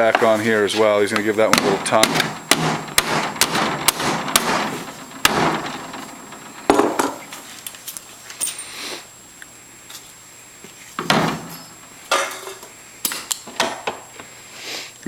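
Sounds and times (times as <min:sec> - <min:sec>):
rattling and rustling: 0:00.2 - 0:08.6.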